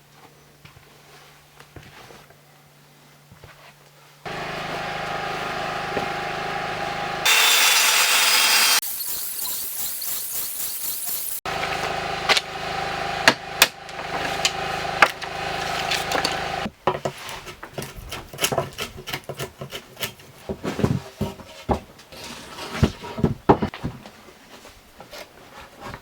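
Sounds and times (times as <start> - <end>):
machine hum: 4.3 - 16.7.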